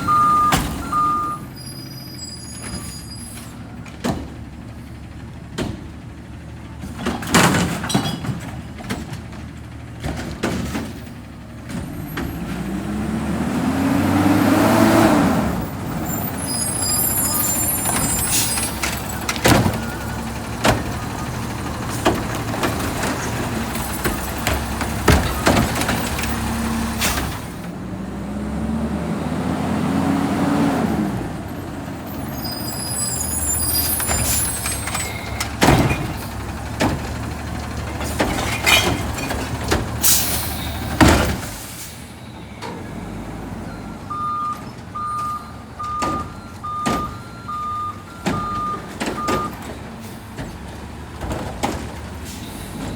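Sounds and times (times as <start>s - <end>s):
reversing beeps: 0.0s - 1.5s, 43.6s - 49.6s
garbage truck diesel engine: 0.0s - 52.9s
air brake hissing: 16.0s - 19.2s, 40.0s - 42.4s, 52.2s - 52.9s.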